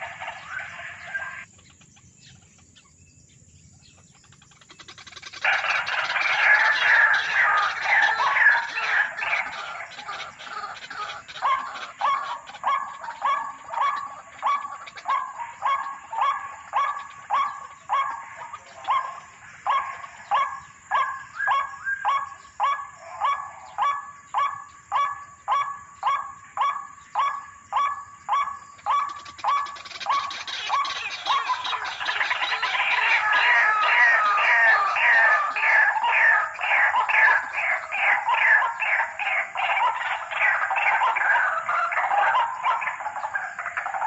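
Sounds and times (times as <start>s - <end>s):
waterhen calling: 0.0s - 1.7s, 4.5s - 44.0s.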